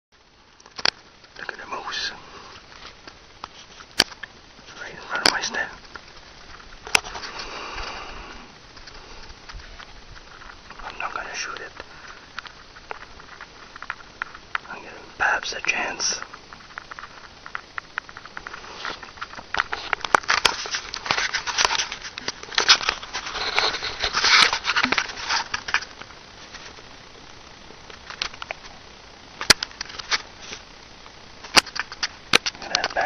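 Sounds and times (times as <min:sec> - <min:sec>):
close rustling and crackling: 0:00.2 - 0:33.0
sharp clicks: 0:29.4 - 0:30.2.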